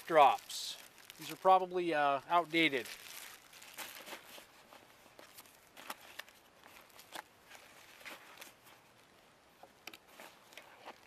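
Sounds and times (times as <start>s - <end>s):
light clicks of packaged items: 0.0s - 1.6s, 5.2s - 8.8s.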